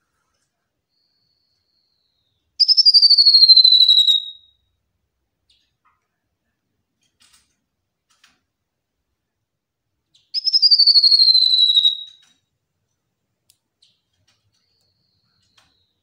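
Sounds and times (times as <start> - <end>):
bird whistled trill: 1.0 - 4.6, 10.4 - 12.2.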